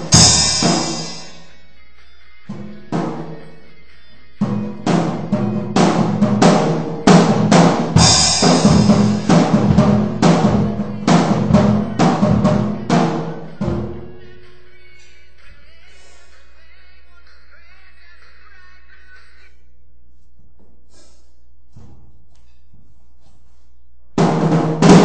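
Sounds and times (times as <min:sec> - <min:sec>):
acoustic drum kit hits: 0:00.0 - 0:01.4, 0:04.4 - 0:14.1, 0:24.2 - 0:25.0.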